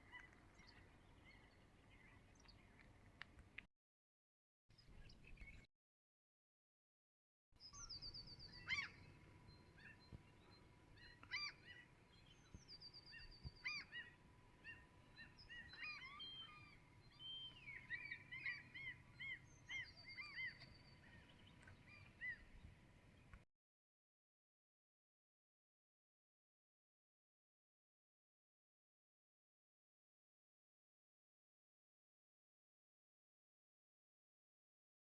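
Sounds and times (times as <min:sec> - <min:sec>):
trilled birdsong: 0:00.0 - 0:03.6, 0:04.7 - 0:05.7, 0:07.6 - 0:23.4.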